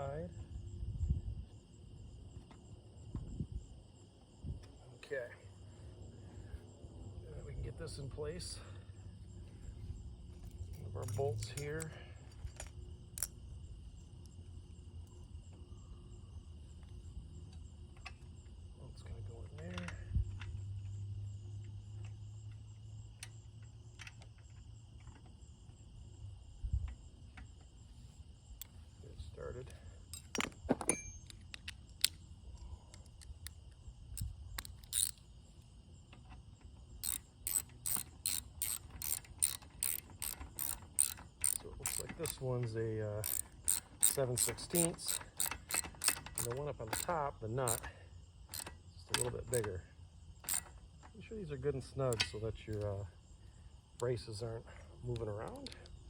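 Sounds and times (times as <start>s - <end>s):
insects chirring: 0.0s - 56.0s
metal bolt clicks: 10.5s - 13.4s, 37.0s - 47.9s, 48.5s - 49.8s, 52.0s - 52.9s.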